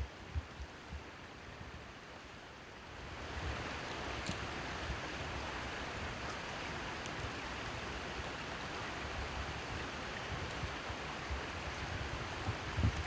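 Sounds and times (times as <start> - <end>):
faint ticks: 3.8 - 4.5.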